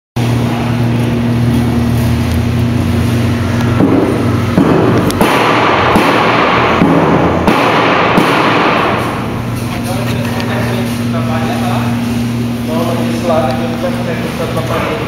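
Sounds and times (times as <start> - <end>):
blower motor hum: 0.2 - 15.0.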